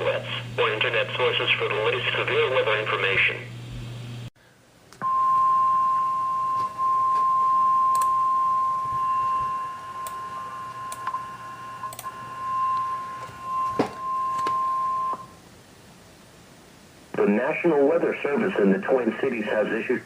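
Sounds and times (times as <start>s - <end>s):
long steady alarm beep: 5.0s - 15.4s.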